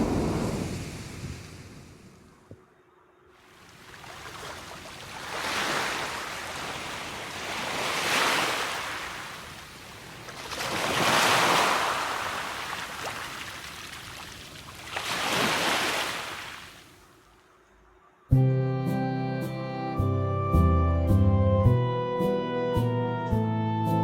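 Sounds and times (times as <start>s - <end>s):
ocean waves washing in: 0.0s - 2.5s, 3.3s - 17.0s.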